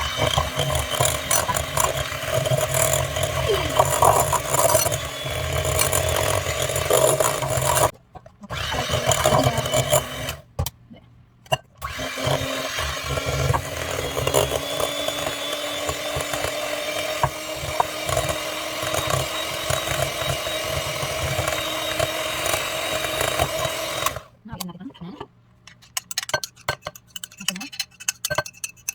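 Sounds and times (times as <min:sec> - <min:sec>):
electric hand mixer beating: 0:00.0 - 0:07.9, 0:08.5 - 0:10.4, 0:11.8 - 0:24.3.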